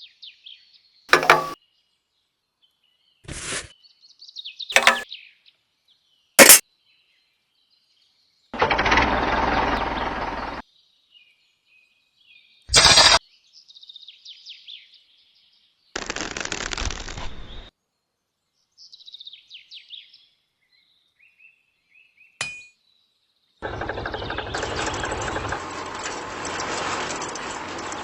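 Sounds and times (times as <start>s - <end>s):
sharp click: 1.1s - 1.6s, 4.8s - 5.0s, 6.4s - 6.6s, 12.7s - 13.2s.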